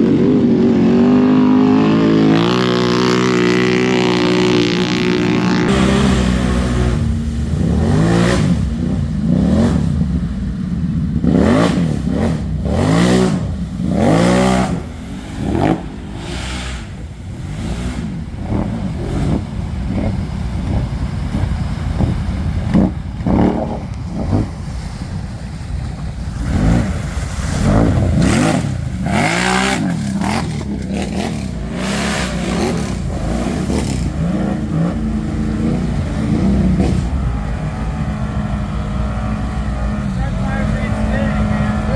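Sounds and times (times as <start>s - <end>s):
atv engine revving: 0.0s - 41.9s.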